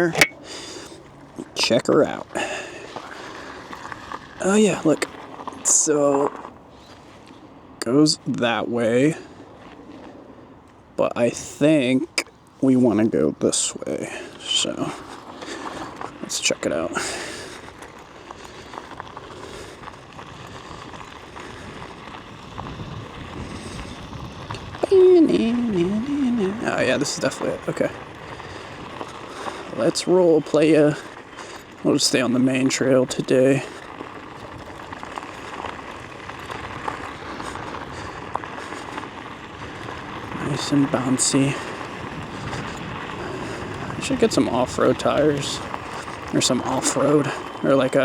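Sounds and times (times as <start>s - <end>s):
scooter tyre rumble: 0.0s - 48.0s
wind on microphone: 21.6s - 26.7s, 41.8s - 45.0s.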